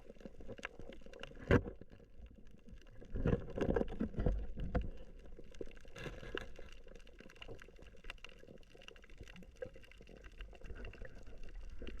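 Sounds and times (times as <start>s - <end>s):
water bubbling and crackling: 0.0s - 12.0s.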